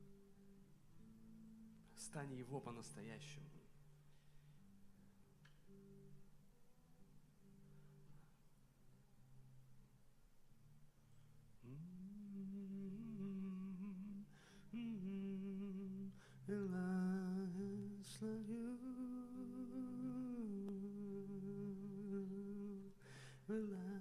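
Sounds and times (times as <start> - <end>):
person humming a melody: 11.6 - 24.0
short breaths: 23.0 - 23.5.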